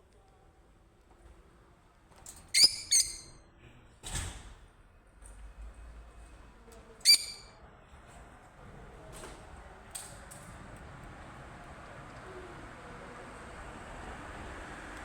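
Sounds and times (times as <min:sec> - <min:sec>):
sharp bird calls: 0:02.6 - 0:03.4, 0:07.1 - 0:07.5.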